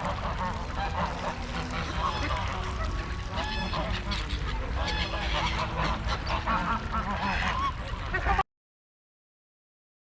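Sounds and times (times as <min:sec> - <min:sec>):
birds honking: 0:00.0 - 0:08.3.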